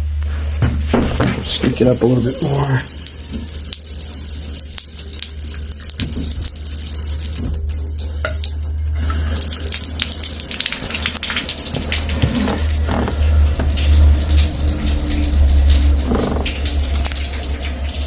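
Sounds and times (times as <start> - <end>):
bathtub faucet running: 0.0 - 18.0
low rumble: 12.2 - 18.0.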